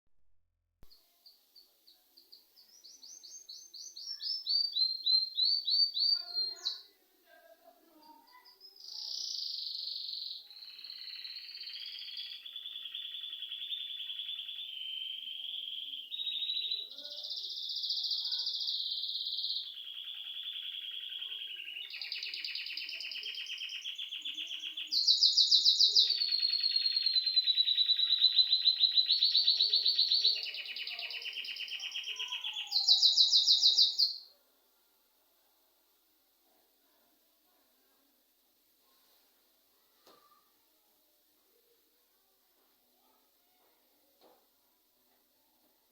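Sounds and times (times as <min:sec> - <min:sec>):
songbirds trilling: 0:19.7 - 0:34.1.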